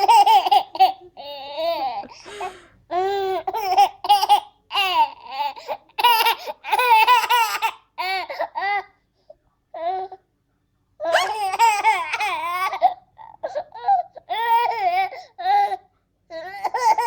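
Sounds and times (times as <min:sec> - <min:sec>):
baby laughing: 0:00.0 - 0:07.8, 0:11.1 - 0:12.7.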